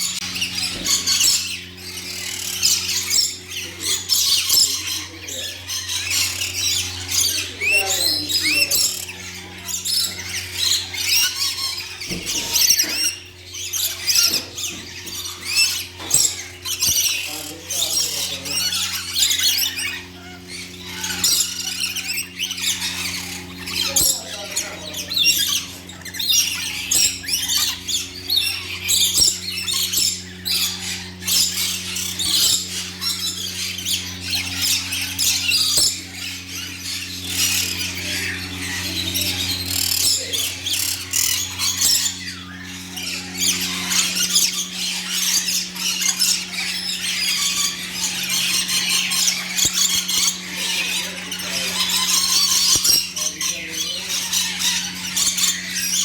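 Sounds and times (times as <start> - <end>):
small birds chirping and squawking: 0.0 - 56.0
steady low hum: 0.0 - 56.0.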